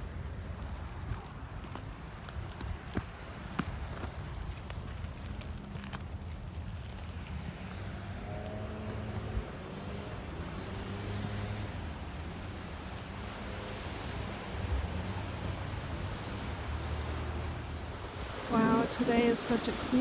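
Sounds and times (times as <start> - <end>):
ocean surf washing: 9.4 - 20.0.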